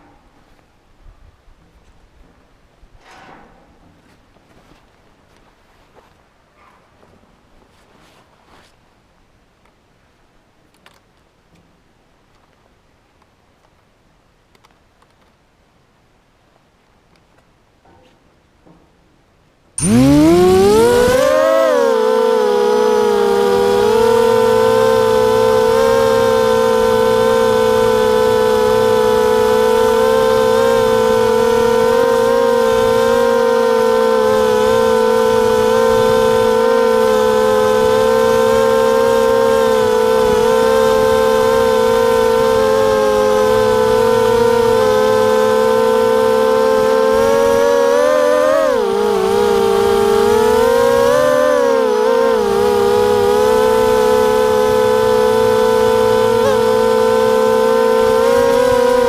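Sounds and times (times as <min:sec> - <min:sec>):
drone propellers whining: 0:19.8 - 0:59.0.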